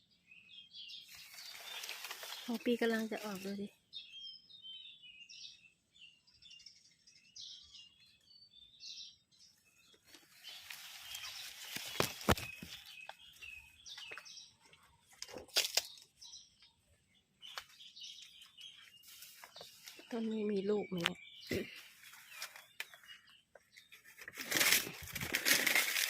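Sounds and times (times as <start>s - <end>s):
small birds chirping: 0.0s - 26.0s
rustling: 1.0s - 3.6s, 10.0s - 13.4s, 17.6s - 20.2s, 21.7s - 23.2s, 23.8s - 26.0s.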